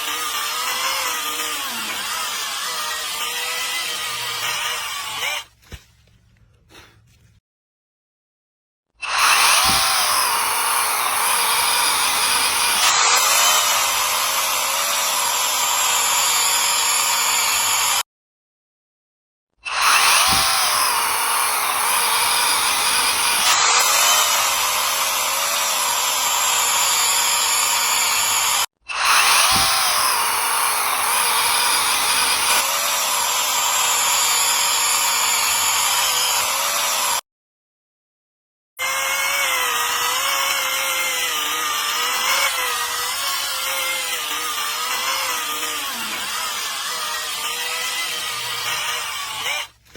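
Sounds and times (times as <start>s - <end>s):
chainsaw cutting wood: 0.0s - 5.5s, 9.0s - 18.0s, 19.6s - 37.2s, 38.8s - 49.9s.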